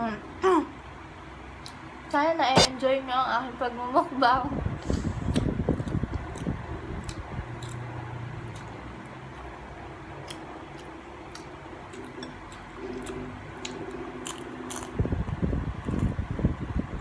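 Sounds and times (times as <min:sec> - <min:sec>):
person chewing crunchy food: 0:04.9 - 0:09.5, 0:10.2 - 0:15.0.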